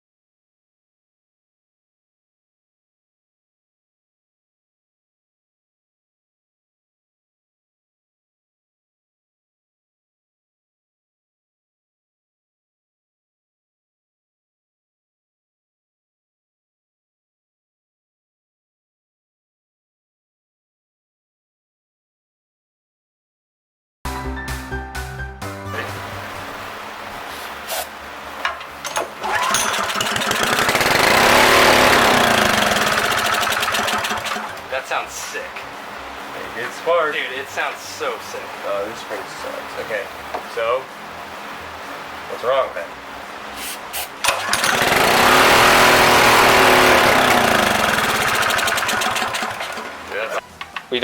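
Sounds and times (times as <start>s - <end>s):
small engine running: 29.2s - 34.9s, 44.2s - 50.4s.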